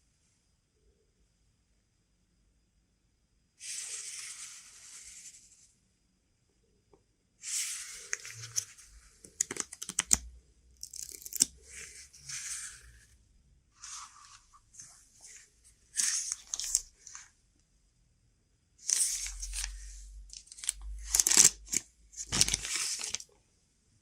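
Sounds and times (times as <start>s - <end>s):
packaging tearing and crinkling: 20.4s - 23.2s.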